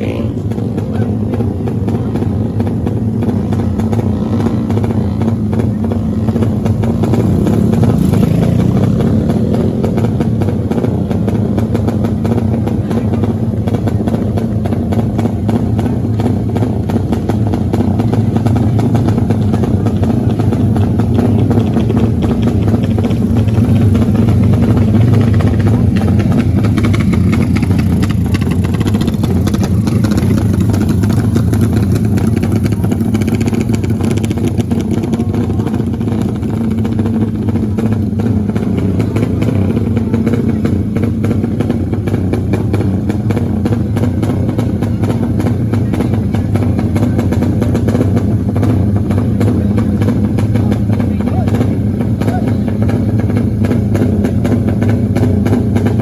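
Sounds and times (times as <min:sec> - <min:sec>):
motorcycle engine running: 0:00.0 - 0:56.0.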